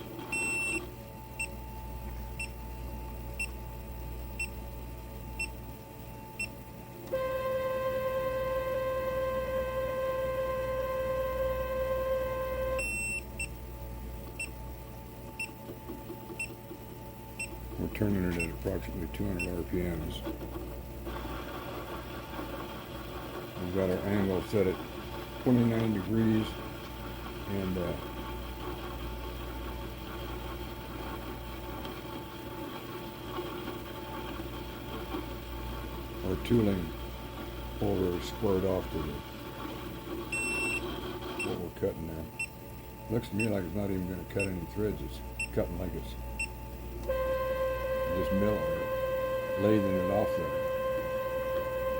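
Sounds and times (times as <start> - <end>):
lathe drive whining: 7.1 - 12.9, 16.0 - 41.8, 47.0 - 51.9.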